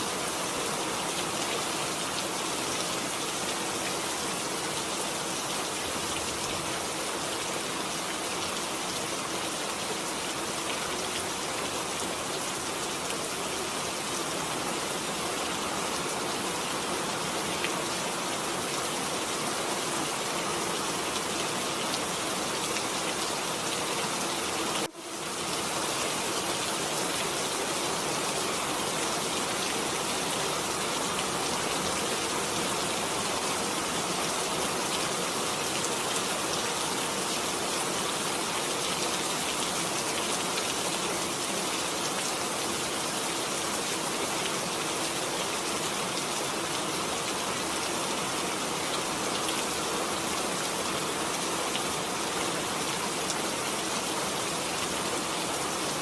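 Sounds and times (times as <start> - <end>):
rain falling: 0.0 - 56.0.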